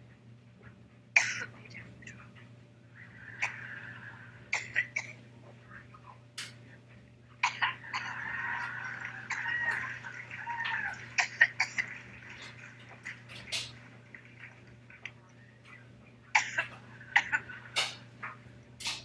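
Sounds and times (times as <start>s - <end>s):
woman coughing: 1.2s - 1.5s, 4.6s - 5.2s, 7.4s - 8.6s, 11.2s - 12.0s, 16.4s - 17.5s.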